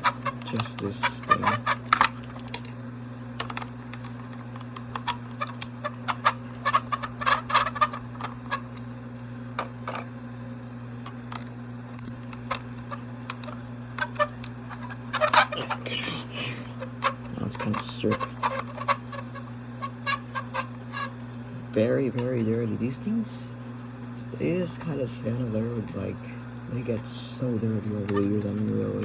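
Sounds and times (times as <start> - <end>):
small screws and plastic parts clicking: 0.0 - 2.8, 3.4 - 10.1, 11.0 - 15.8, 16.8 - 21.1
low electrical hum: 0.0 - 29.0.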